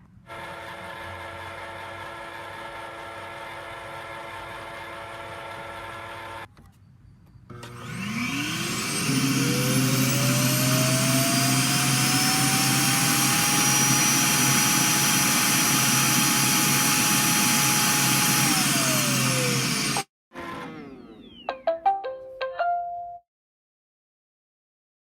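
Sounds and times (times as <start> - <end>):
robot vacuum motor whining: 7.5 - 21.5.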